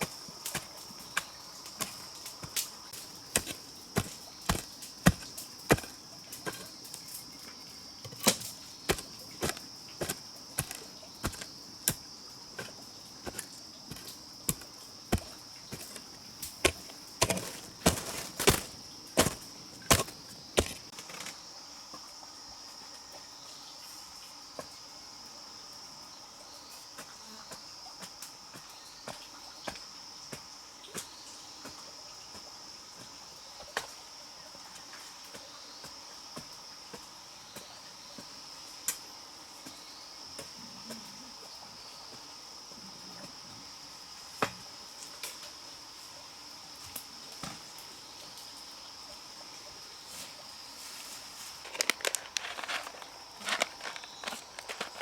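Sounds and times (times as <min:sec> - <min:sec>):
hand tool chopping: 0:00.0 - 0:06.7, 0:08.1 - 0:21.3
high insect trill: 0:00.0 - 0:55.0.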